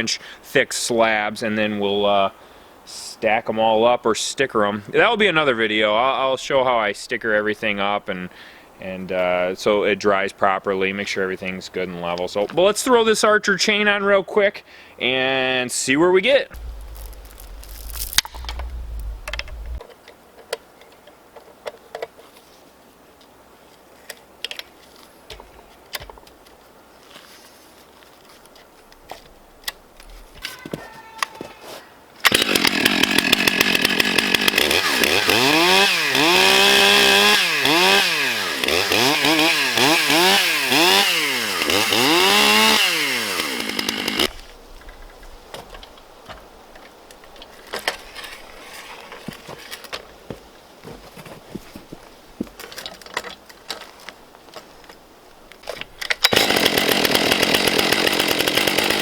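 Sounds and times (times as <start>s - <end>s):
chainsaw revving: 16.6s - 19.8s, 32.3s - 44.3s, 56.3s - 59.0s.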